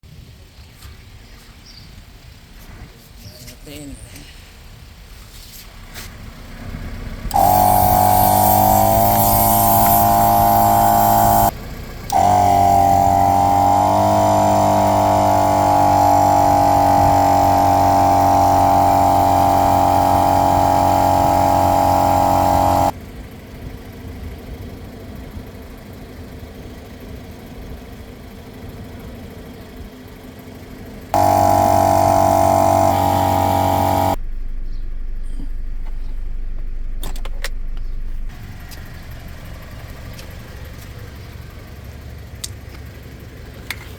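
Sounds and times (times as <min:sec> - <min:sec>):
air compressor motor humming: 0:07.3 - 0:23.0, 0:31.2 - 0:34.2.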